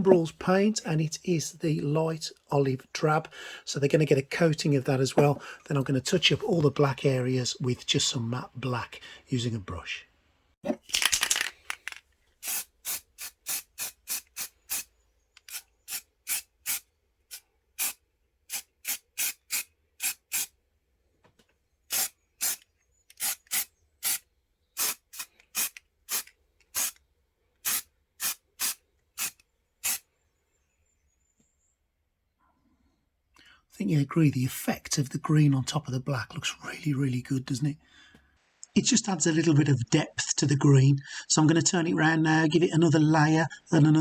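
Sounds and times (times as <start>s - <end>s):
paint spraying in hissing bursts: 12.4s - 14.9s, 15.5s - 16.8s, 17.8s - 20.5s, 21.9s - 22.6s, 24.8s - 27.0s, 27.6s - 30.0s.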